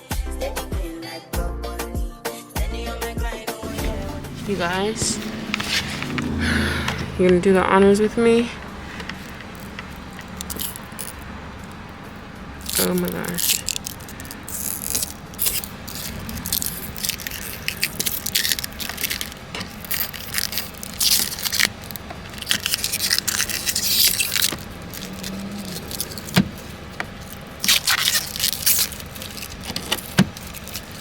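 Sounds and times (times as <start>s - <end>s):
scraping and rustling of door hardware: 8.6s - 31.0s.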